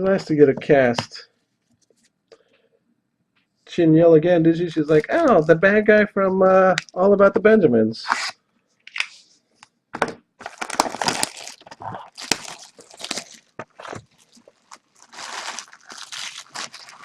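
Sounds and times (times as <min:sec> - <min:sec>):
plastic wrappers crinkling: 0:10.4 - 0:17.0.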